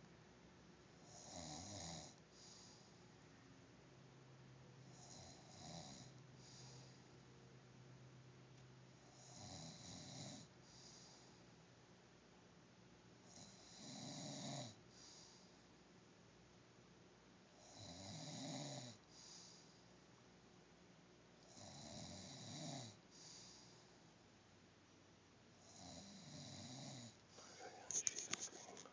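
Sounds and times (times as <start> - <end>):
man snoring: 1.0 - 2.8, 4.9 - 6.9, 9.1 - 11.2, 13.3 - 14.8, 17.6 - 19.4, 21.5 - 23.5, 25.6 - 27.8.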